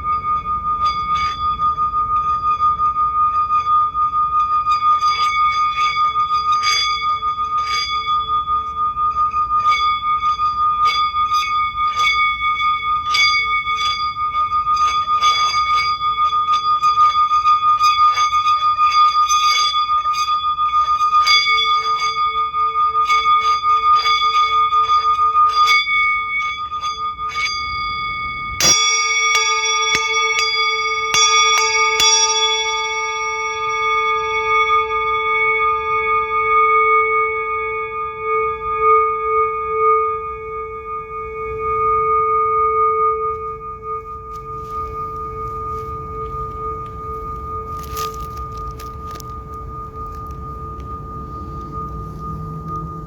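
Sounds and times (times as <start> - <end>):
small metallic strikes: 0.0 - 41.9
singing bowl ringing tone: 0.0 - 53.0
loud low bowl strike: 27.5 - 41.3.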